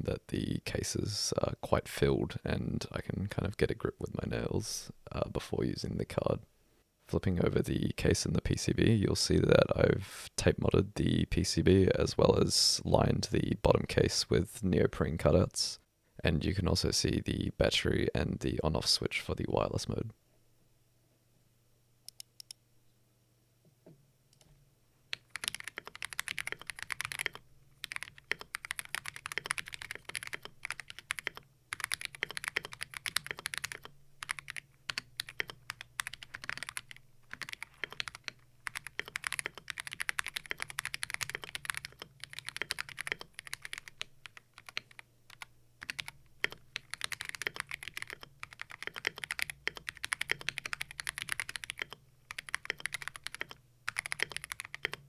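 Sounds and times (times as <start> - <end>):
mechanical keyboard typing: 25.2 - 55.0.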